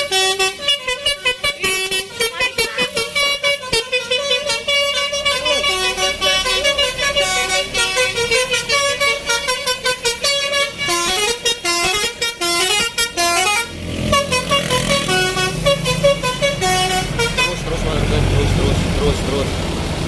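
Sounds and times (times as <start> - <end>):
multi-tone bus horn: 0.0 - 19.5.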